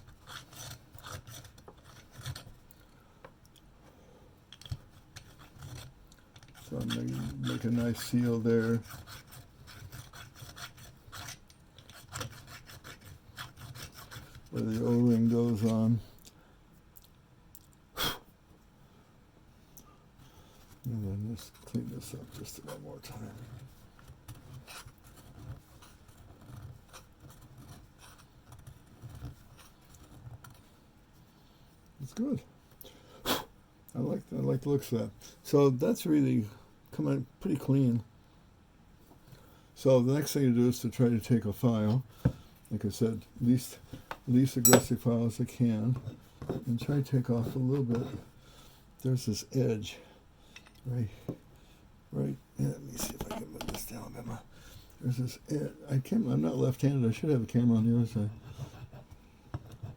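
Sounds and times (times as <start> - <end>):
scraping and rubbing on metal cap: 5.1 - 15.9.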